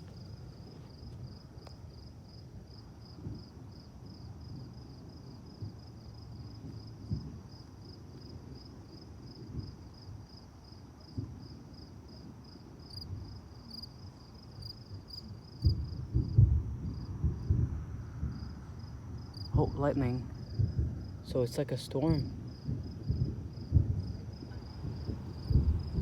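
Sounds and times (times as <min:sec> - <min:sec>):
crickets chirping: 0:00.0 - 0:26.0
distant thunder rumbling: 0:14.6 - 0:26.0.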